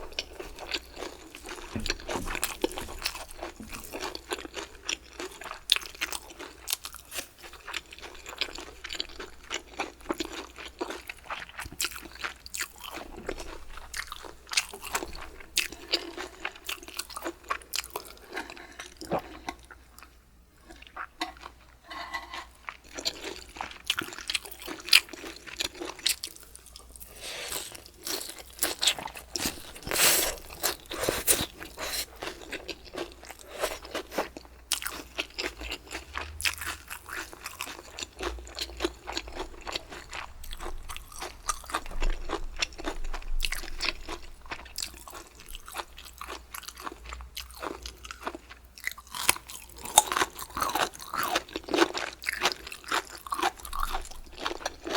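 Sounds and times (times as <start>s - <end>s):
person chewing crunchy food: 0.0s - 54.9s.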